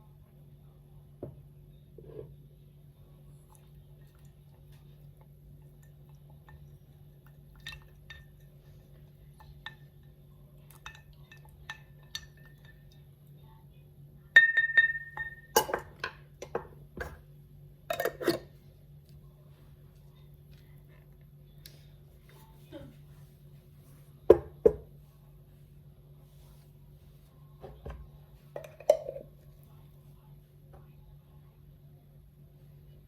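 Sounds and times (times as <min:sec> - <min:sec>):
glassware clinking: 0:14.4 - 0:16.6, 0:17.9 - 0:18.5, 0:28.6 - 0:29.3.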